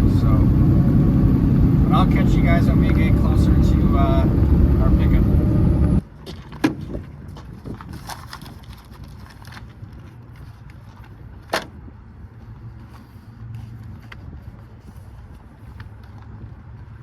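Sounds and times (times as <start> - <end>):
truck engine drone in cab: 0.0 - 6.0.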